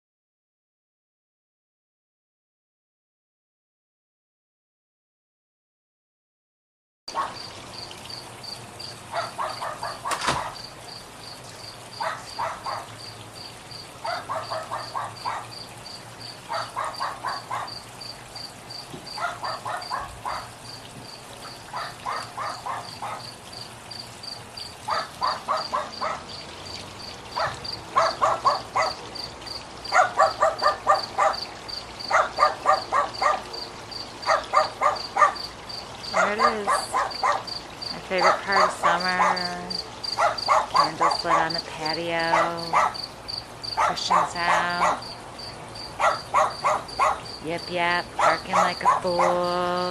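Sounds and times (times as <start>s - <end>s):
cricket chirping: 10.4s - 26.4s, 27.0s - 36.2s, 37.1s - 37.9s, 39.7s - 40.6s, 43.0s - 43.8s, 45.0s - 47.4s.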